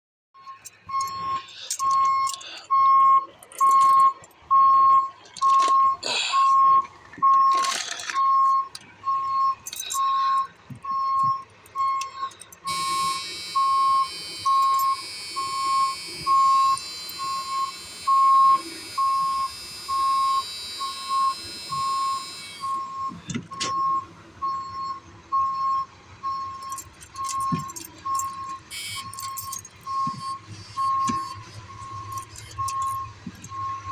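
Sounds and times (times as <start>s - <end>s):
electronic warning beeper: 12.7s - 24.9s, 26.5s - 33.9s.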